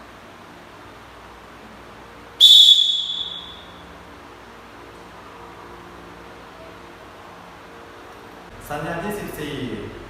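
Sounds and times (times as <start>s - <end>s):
background hiss: 0.0s - 10.0s.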